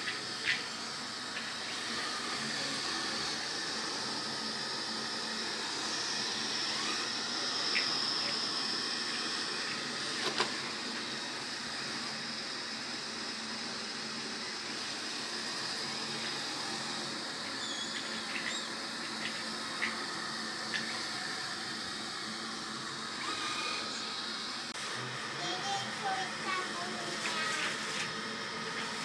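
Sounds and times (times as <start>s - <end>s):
robot vacuum whirring: 0.0s - 29.0s
faint high squeaks: 17.6s - 18.7s.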